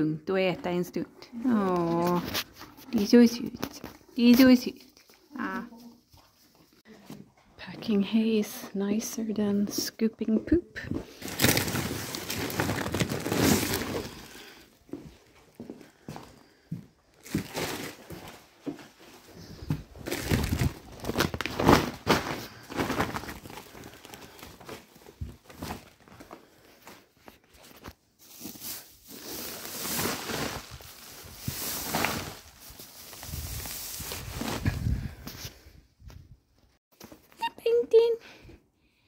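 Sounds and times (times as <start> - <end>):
hay rustling and crunching: 28.2 - 34.9.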